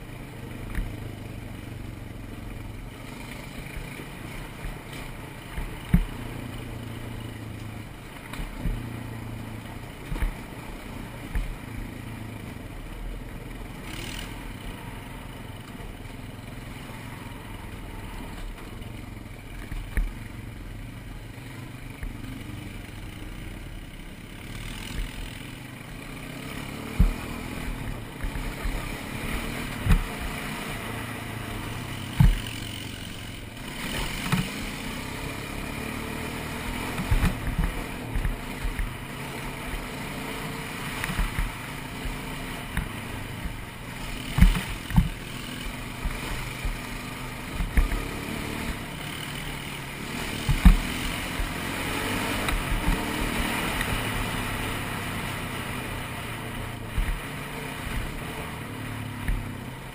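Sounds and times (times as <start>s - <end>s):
atv engine running: 0.0s - 59.9s
sharp low thumps: 26.9s - 28.9s, 50.4s - 51.7s.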